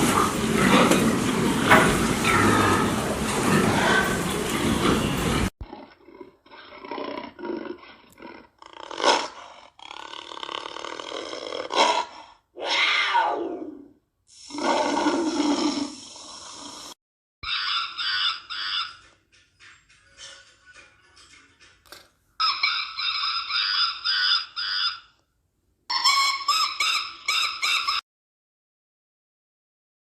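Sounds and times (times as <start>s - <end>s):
animal calls: 17.4s - 19.2s, 22.4s - 25.2s, 25.9s - 28.0s.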